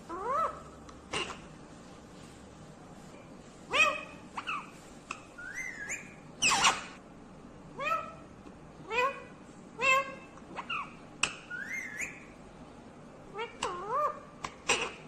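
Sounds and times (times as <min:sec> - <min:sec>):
parakeet whistled calls: 0:03.7 - 0:04.7, 0:05.4 - 0:06.9, 0:11.5 - 0:12.3.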